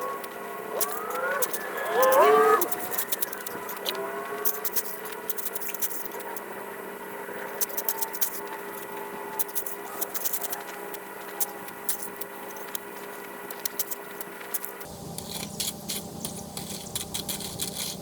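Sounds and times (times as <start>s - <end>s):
faint hum: 0.0s - 18.0s
shovel in loose gravel: 15.2s - 18.0s.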